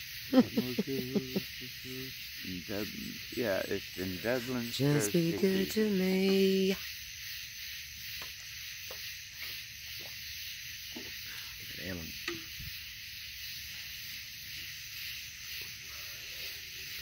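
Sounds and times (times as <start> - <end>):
steady high hiss: 0.0 - 17.0.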